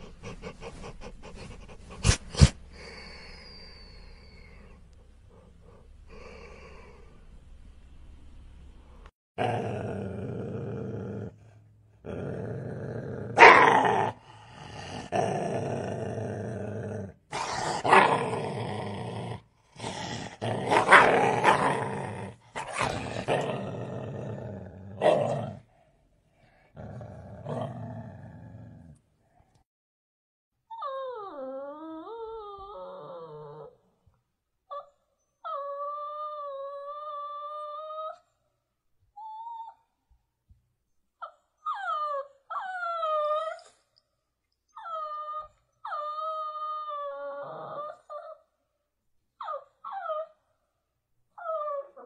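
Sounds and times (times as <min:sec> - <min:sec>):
dog whining and howling: 0:03.2 - 0:05.4, 0:30.6 - 0:33.8, 0:34.7 - 0:38.4, 0:39.2 - 0:40.0, 0:41.2 - 0:43.8, 0:44.7 - 0:48.5, 0:49.3 - 0:50.5, 0:51.3 - 0:52.0
dog growling: 0:09.4 - 0:25.7, 0:26.7 - 0:29.0, 0:46.0 - 0:48.4.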